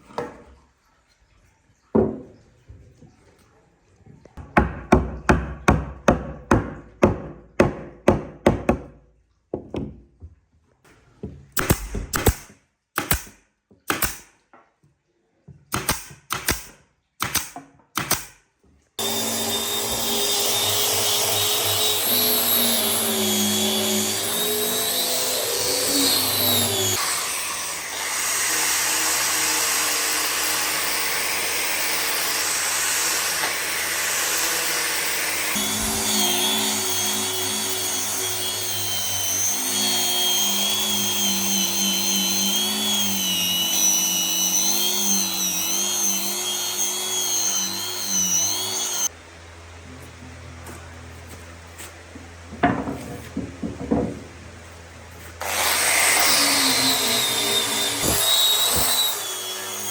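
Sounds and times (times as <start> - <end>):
hammering on wood: 4.4 - 9.0, 15.7 - 18.4
power tool running: 19.0 - 49.2, 55.4 - 59.9.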